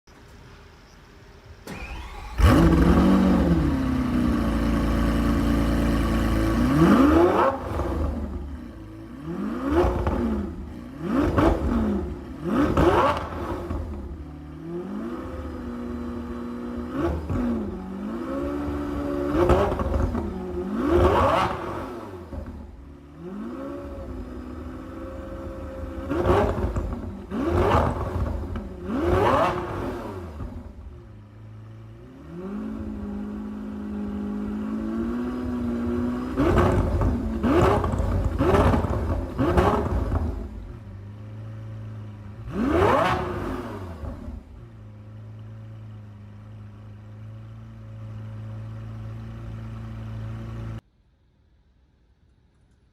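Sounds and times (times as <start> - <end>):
car engine revving: 1.7 - 50.8
car engine idling: 43.9 - 52.8.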